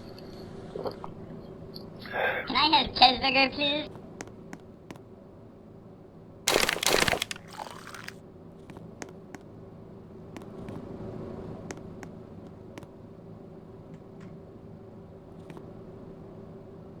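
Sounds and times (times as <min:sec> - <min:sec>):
loud crunching crinkling: 0:06.5 - 0:08.2.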